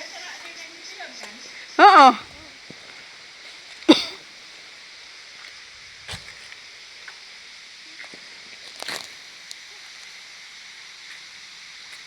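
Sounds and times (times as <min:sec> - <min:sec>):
outdoor background hiss: 0:00.0 - 0:12.0
brief vocal sound: 0:01.8 - 0:02.2.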